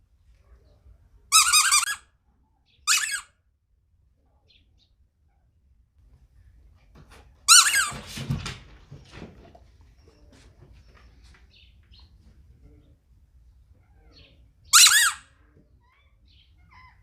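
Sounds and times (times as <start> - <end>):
squeaky toy squealing: 1.3 - 2.1, 2.9 - 3.3, 7.5 - 8.0, 14.7 - 15.3.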